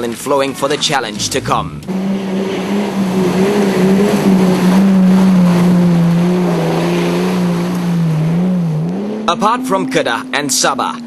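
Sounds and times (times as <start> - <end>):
rushing noise: 1.0 - 8.2
engine running at high revs: 1.1 - 10.6.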